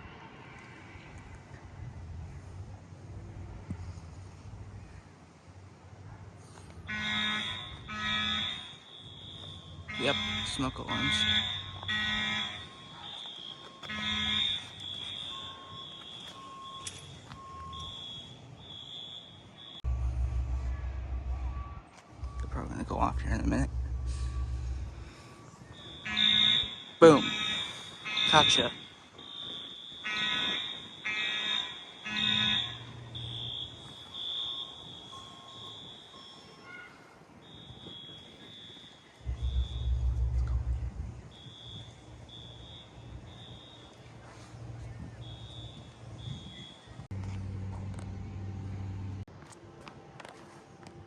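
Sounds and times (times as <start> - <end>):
faint low beeps: 1.2 - 49.3
high-pitched smoke alarm tone: 6.9 - 19.9, 21.2 - 44.0, 45.2 - 47.0
loud buzzing alarm blast: 6.9 - 36.7, 37.5 - 44.0.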